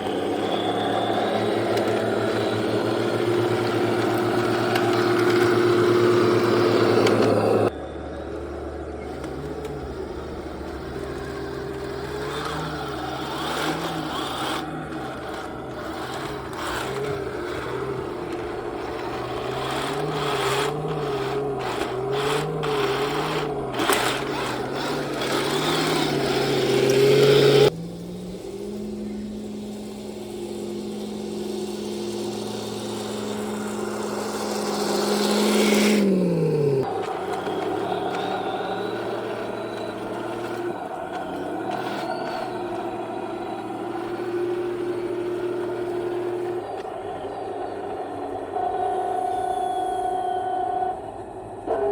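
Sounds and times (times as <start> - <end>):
simulated tank engine sound: 0.0 - 51.9
steady higher hum: 0.0 - 51.9.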